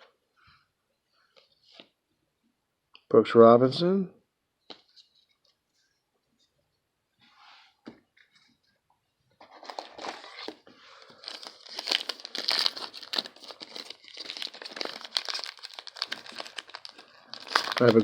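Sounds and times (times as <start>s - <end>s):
plastic wrapper crinkling: 9.4s - 18.0s.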